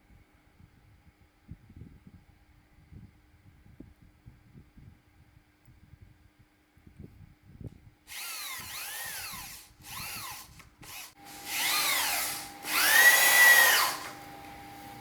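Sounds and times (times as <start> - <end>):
power drill motor whine: 8.1 - 15.0.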